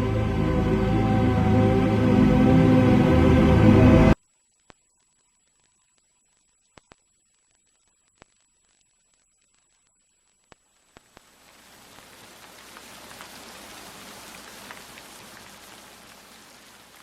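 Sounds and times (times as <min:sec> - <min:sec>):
rain drop crackles: 0:10.9 - 0:17.0
rain falling: 0:11.0 - 0:17.0.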